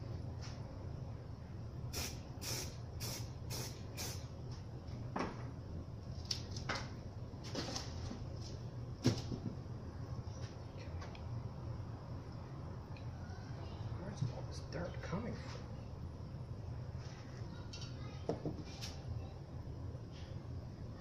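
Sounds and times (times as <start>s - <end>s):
steady low hum: 0.0s - 21.0s
spray paint can hissing: 1.9s - 4.3s.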